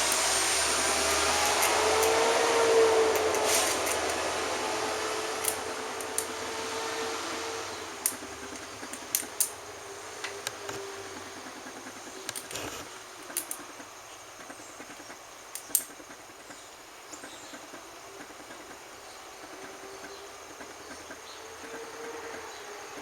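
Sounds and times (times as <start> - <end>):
steady hiss: 0.0 - 23.0
sharp crackling clicks: 5.4 - 6.4, 12.2 - 13.7.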